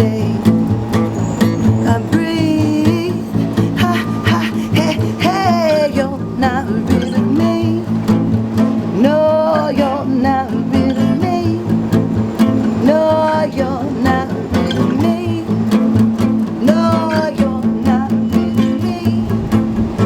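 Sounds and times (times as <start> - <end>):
strummed guitar: 0.0 - 20.0
person singing long sliding notes: 2.0 - 7.8
upright bass: 3.4 - 5.6.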